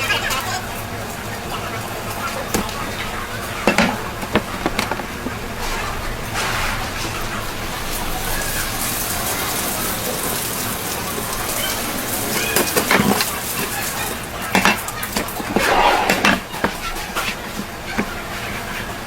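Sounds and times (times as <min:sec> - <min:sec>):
background noise: 0:00.0 - 0:19.0
voices: 0:00.0 - 0:19.0
knife scraping on cutting board: 0:03.7 - 0:05.4.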